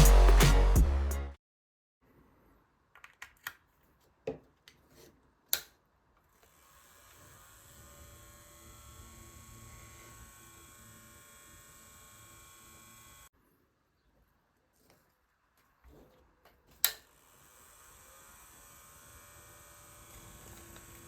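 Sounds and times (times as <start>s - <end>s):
small fan motor humming: 6.6s - 13.3s, 17.2s - 21.0s.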